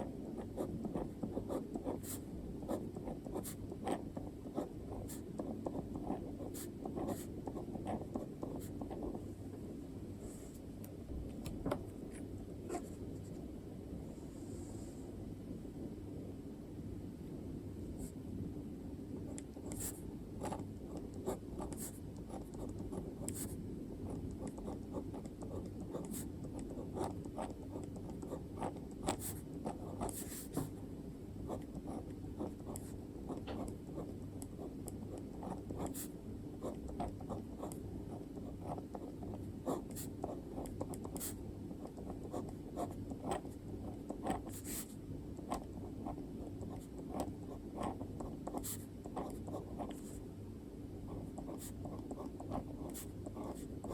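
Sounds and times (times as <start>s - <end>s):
pen scratching on paper: 0.0s - 9.2s, 19.3s - 30.8s, 31.5s - 50.2s, 51.1s - 53.9s
steady low hum: 0.0s - 53.9s.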